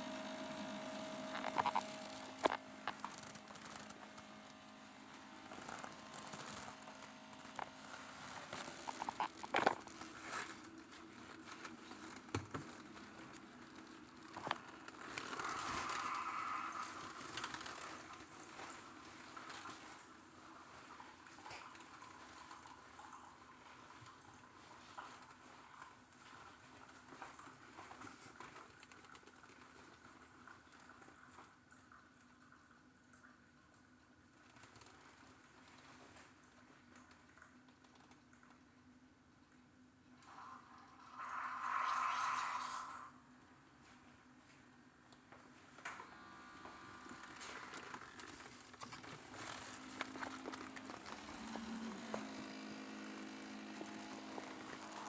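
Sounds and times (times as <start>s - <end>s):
low steady hum: 0.0s - 27.8s
coffee maker crackling: 0.0s - 30.4s, 40.2s - 43.2s, 44.4s - 55.0s
low hiss: 39.3s - 55.0s.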